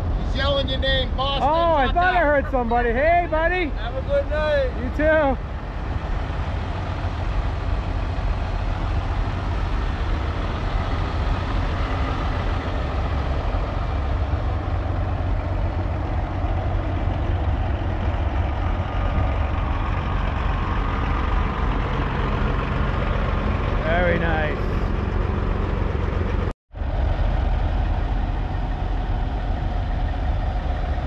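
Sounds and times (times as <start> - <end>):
diesel truck engine idling: 0.0 - 31.0.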